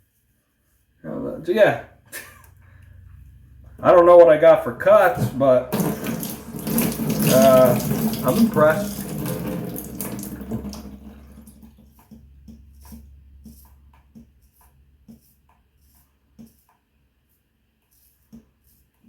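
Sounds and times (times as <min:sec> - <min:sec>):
water running from tap: 0:05.7 - 0:12.2.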